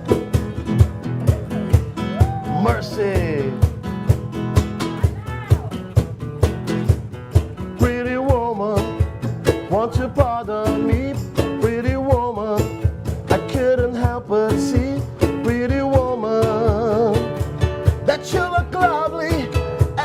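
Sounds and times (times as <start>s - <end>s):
guitar melody sliding in pitch: 0.0s - 3.6s
live band music: 0.0s - 20.0s
steady drum beat: 0.0s - 20.0s.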